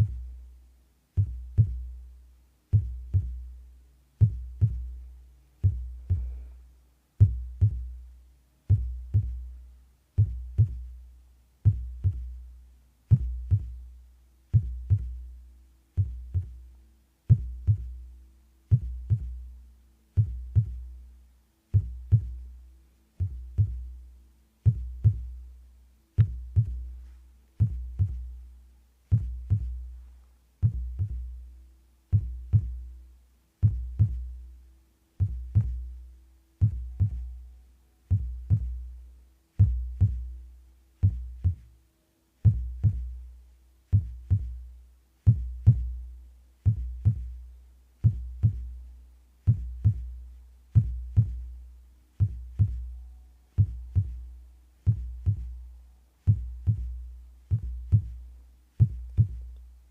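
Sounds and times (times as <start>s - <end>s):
heartbeat thumps: 0.0s - 0.4s, 1.2s - 2.0s, 2.7s - 3.6s, 4.2s - 6.4s, 7.2s - 12.5s, 13.1s - 18.1s, 18.7s - 19.5s, 20.1s - 21.0s, 21.7s - 22.6s, 23.2s - 24.0s, 24.6s - 25.6s, 26.2s - 28.4s, 29.1s - 31.5s, 32.1s - 33.0s, 33.6s - 34.4s, 35.2s - 36.0s, 36.6s - 37.4s, 38.0s - 39.0s, 39.6s - 40.4s, 41.0s - 41.7s, 42.4s - 43.3s, 43.9s - 51.6s, 52.2s - 59.6s.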